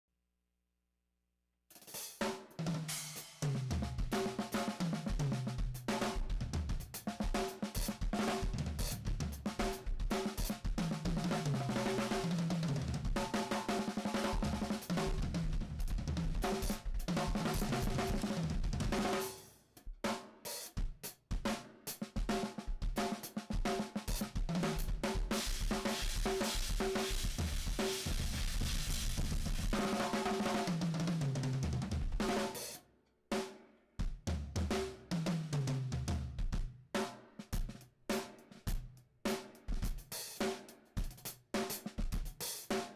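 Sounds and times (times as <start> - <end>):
drum kit playing: 1.7 - 32.8, 34.0 - 42.9
backing track with bass line: 27.2 - 29.8.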